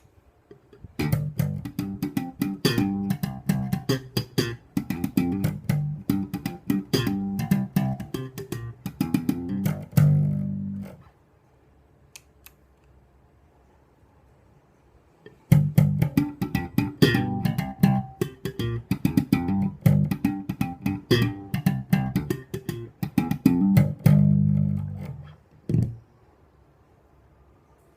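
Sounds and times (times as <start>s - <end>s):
electric bass plucked notes: 0.9s - 11.0s, 15.5s - 26.0s.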